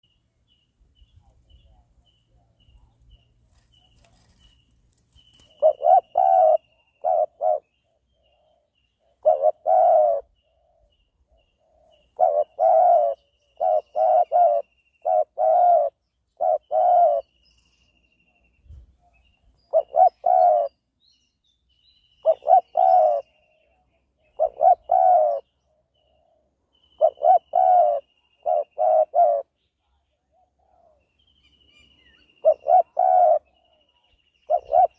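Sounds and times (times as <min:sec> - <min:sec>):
faint high chirping: 0:00.0 - 0:30.1
dove cooing: 0:05.3 - 0:17.4, 0:19.0 - 0:20.8, 0:22.2 - 0:31.0, 0:32.4 - 0:34.9.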